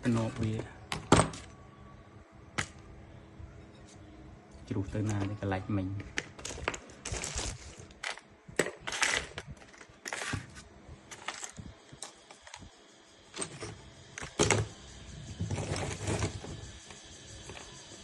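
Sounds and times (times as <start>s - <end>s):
small hard objects clicking and scraping: 5.0s - 12.8s.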